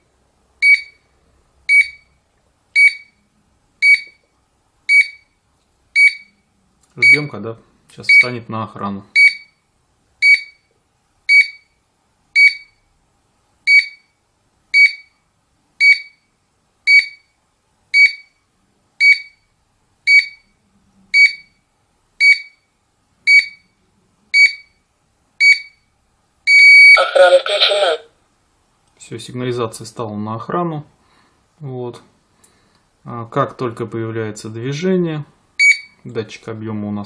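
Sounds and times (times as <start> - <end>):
alarm panel long beep: 0.6 - 1.0, 2.8 - 3.2, 3.8 - 4.2, 4.9 - 5.3, 6.0 - 6.3, 7.0 - 7.3, 8.1 - 8.4, 9.2 - 9.6, 10.2 - 10.7, 11.3 - 11.7, 12.4 - 12.8, 13.7 - 14.1, 14.8 - 15.1, 15.8 - 16.2, 16.9 - 17.3, 18.0 - 18.4, 19.0 - 19.4, 20.1 - 20.5, 21.2 - 21.6, 22.2 - 22.6, 23.3 - 23.7, 24.4 - 24.7, 25.4 - 25.8, 26.5 - 27.3, 35.6 - 36.0.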